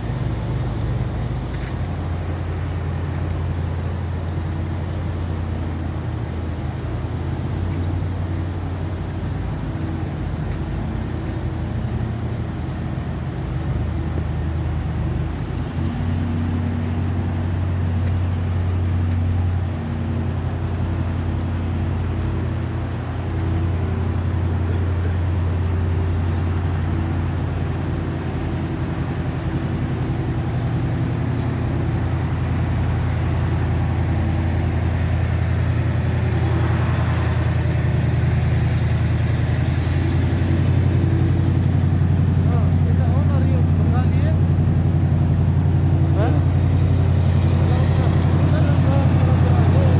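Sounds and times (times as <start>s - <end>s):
engine running with low hum: 0.0s - 49.9s.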